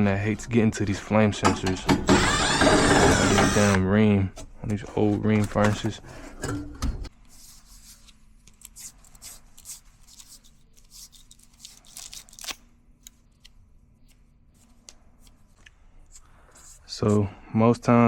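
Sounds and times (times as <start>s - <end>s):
hands handling parts: 4.4s - 17.3s.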